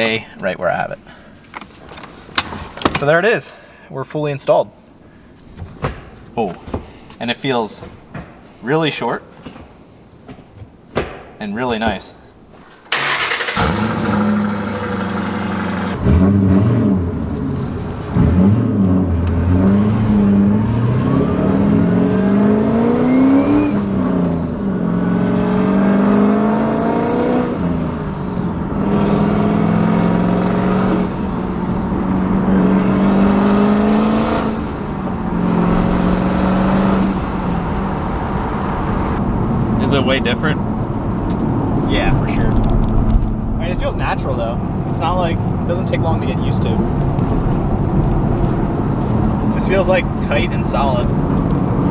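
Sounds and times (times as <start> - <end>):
car engine accelerating: 12.4 - 51.9.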